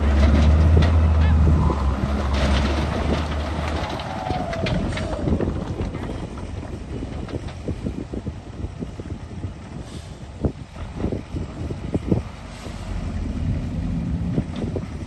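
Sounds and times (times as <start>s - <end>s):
deep hum: 12.2s - 15.0s.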